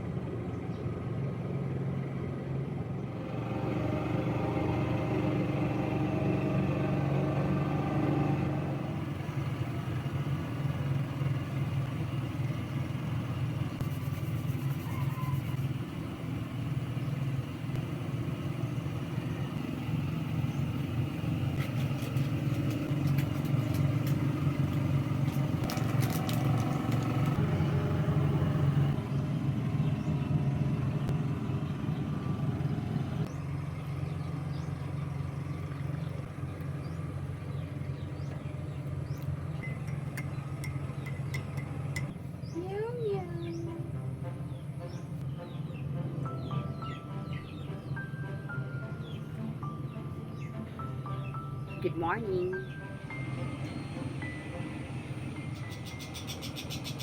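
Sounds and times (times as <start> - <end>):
small mower engine running: 0.0 - 43.8.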